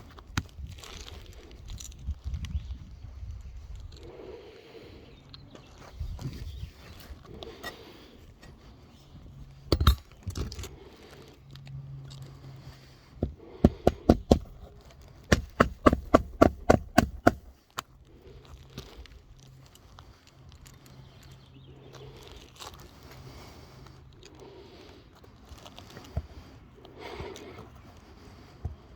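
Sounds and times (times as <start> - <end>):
hammer striking nails: 9.7 - 10.0, 13.2 - 14.6, 15.3 - 17.5.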